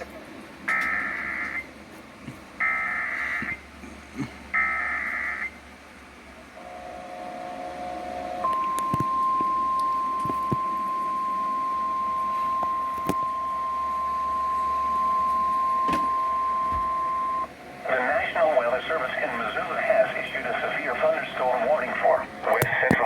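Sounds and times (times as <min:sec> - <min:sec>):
data burst tones: 0:08.5 - 0:17.5.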